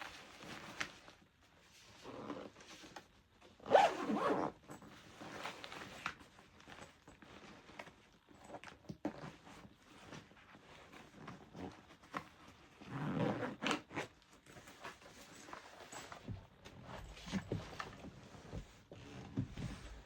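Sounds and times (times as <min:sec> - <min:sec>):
bag zipper being pulled: 0:03.7 - 0:04.6, 0:12.9 - 0:14.0.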